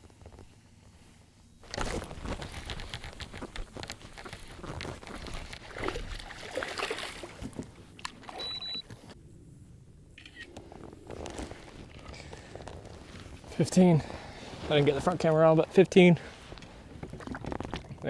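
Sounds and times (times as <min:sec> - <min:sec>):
gear knocks and clicks: 0:01.6 - 0:05.7
water sloshing around kayak: 0:01.6 - 0:09.2, 0:16.2 - 0:18.0
short high beep: 0:08.4 - 0:08.8.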